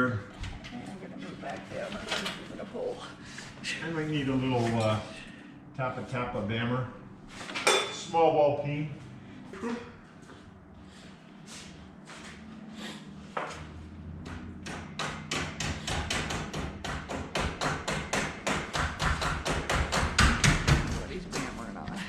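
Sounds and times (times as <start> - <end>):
hammer tapping on metal: 14.2 - 21.6.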